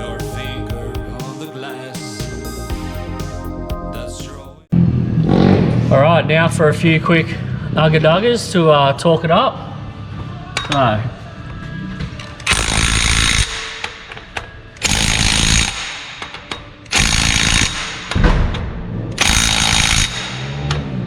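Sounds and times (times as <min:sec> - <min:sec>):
impact wrench hammering bolts: 0:19.2 - 0:20.8.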